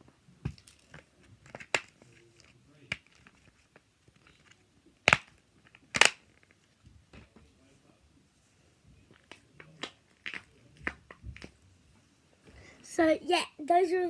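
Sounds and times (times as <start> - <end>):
fidget toys snapping: 0.6 - 2.2, 4.3 - 6.6.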